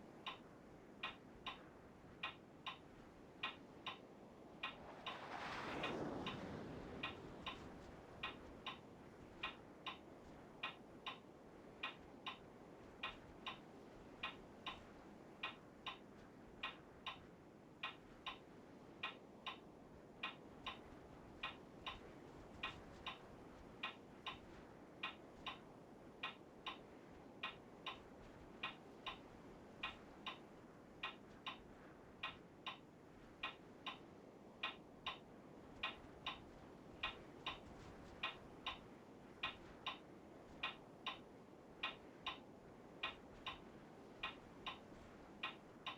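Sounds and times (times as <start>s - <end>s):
faint room hiss: 0.0s - 45.9s
steady ticking: 34.6s - 38.8s, 39.4s - 41.2s, 41.8s - 43.6s, 44.2s - 45.9s.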